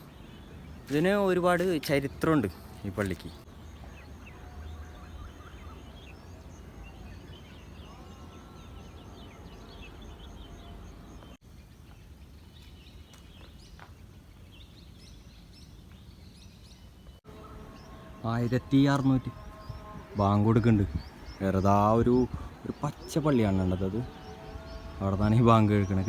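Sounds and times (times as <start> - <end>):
small birds chirping: 0.0 - 26.0.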